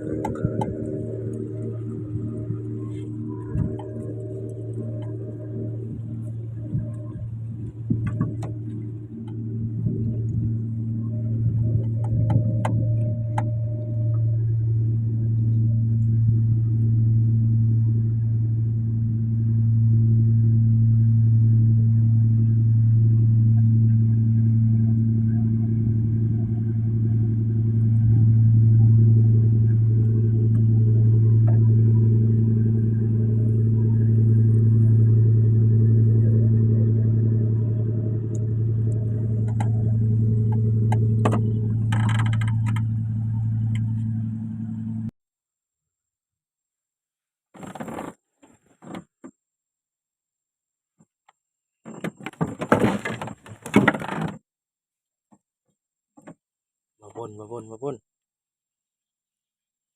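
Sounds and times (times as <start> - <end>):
engine running steadily: 0.0 - 45.1.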